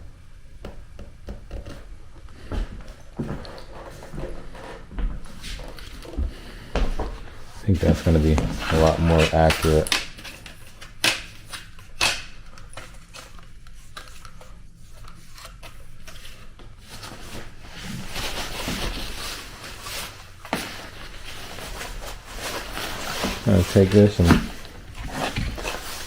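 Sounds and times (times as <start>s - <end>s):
rustling: 12.8s - 26.0s.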